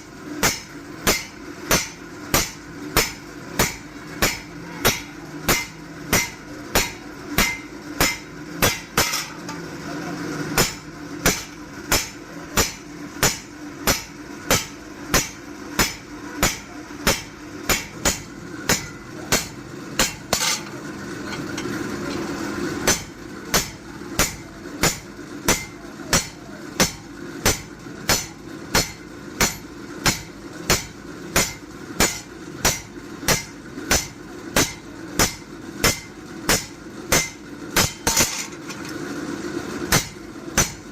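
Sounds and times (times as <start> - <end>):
steady low hum: 0.0 - 40.9
hammer striking metal on anvil: 0.4 - 9.6, 10.5 - 39.0, 39.9 - 40.9.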